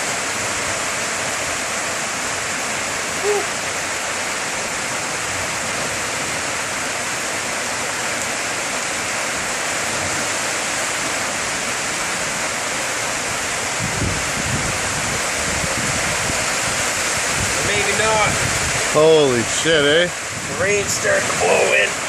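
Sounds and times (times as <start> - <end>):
heavy rain hissing: 0.0 - 22.0
wind buffeting microphone: 13.2 - 21.6.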